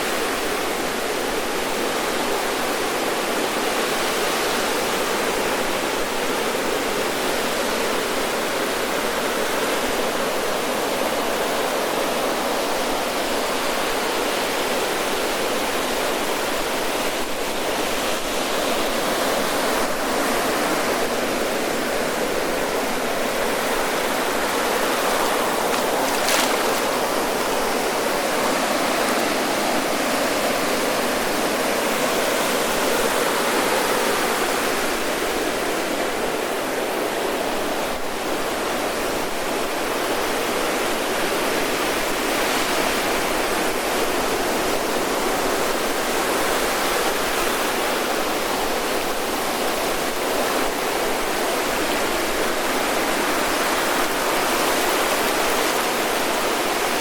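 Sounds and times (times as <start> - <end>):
ocean surf churning: 20.1 - 32.1.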